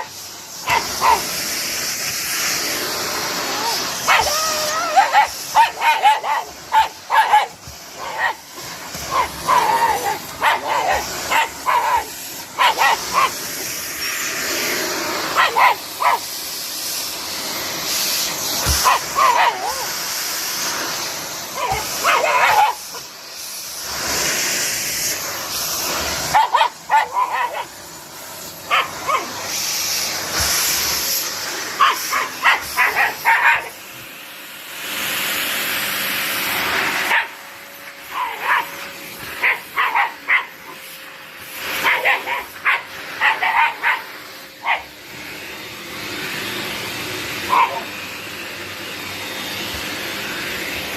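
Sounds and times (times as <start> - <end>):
dog barking: 0.0 - 1.3, 4.0 - 13.4, 15.4 - 16.3, 18.8 - 19.9, 21.5 - 23.0, 26.3 - 27.8, 28.7 - 29.4, 31.8 - 33.8, 37.1 - 37.4, 38.1 - 38.8, 39.4 - 40.8, 41.8 - 44.9, 47.4 - 47.9
vacuum cleaner rushing: 0.0 - 50.9.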